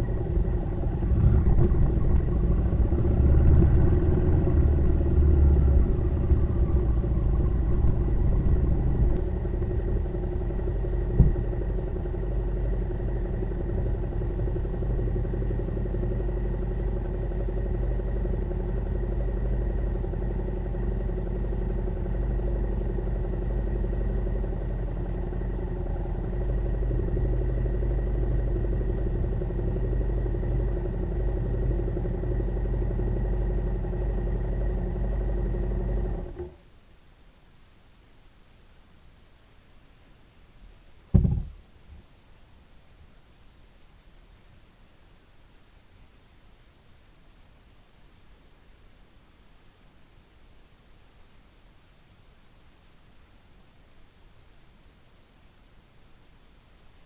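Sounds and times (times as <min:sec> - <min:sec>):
motorcycle engine rumbling: 0:00.0 - 0:36.6, 0:41.1 - 0:41.8
sharp knock: 0:41.1 - 0:41.6.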